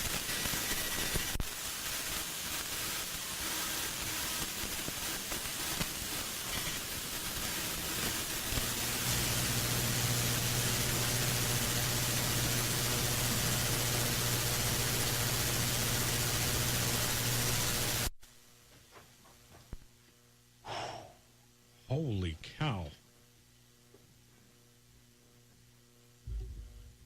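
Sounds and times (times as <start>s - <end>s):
radio dead air hiss: 0.0s - 18.4s, 21.9s - 23.0s
low electrical hum: 8.4s - 27.0s.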